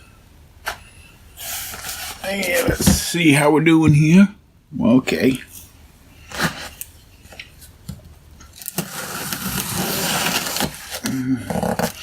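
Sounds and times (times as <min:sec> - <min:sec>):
package rustling and scraping: 0:01.4 - 0:03.1, 0:06.2 - 0:07.7, 0:08.5 - 0:12.0.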